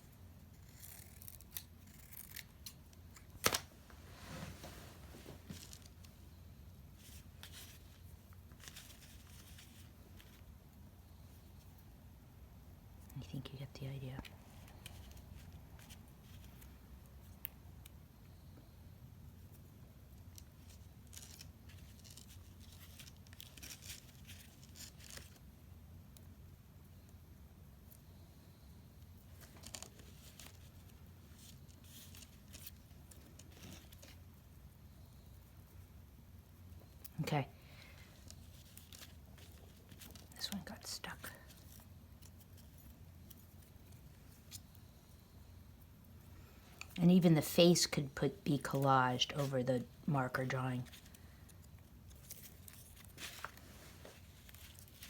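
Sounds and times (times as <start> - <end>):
paper rustling: 52.1 - 55.0.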